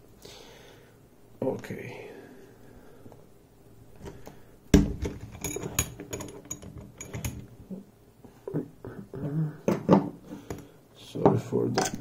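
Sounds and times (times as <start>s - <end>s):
small metal clicks and knocks: 5.0s - 7.5s.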